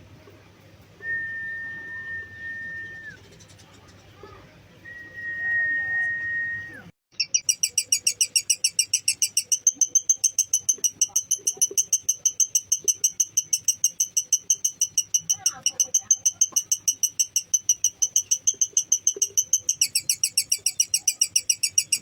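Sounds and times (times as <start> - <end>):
high whistle-like tone: 1.0 - 3.2, 4.9 - 6.9
bird chattering trill: 7.1 - 22.0.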